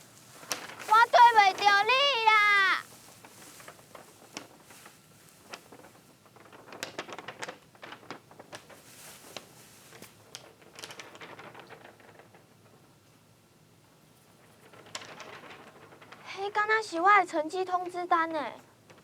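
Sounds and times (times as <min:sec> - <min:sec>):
crunching steps: 0:00.0 - 0:06.2
rustling of dry straw: 0:00.0 - 0:06.4, 0:08.6 - 0:10.2.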